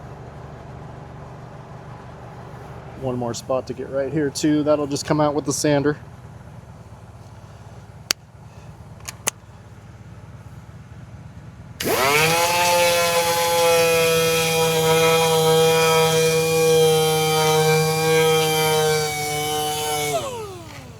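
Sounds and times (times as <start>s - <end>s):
sharp clicks: 9.0s - 9.4s
power sander whining: 11.8s - 20.9s.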